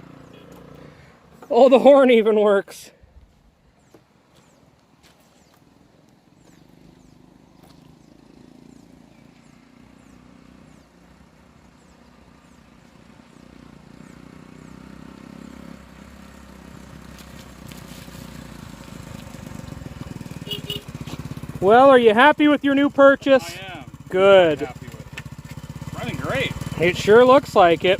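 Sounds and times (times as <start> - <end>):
small motorcycle engine running: 6.4 - 27.9.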